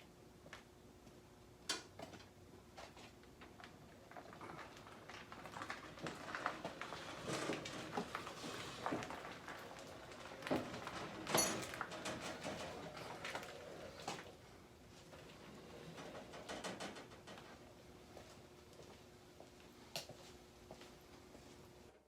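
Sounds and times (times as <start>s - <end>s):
handling knocks and rustles: 6.0s - 14.3s.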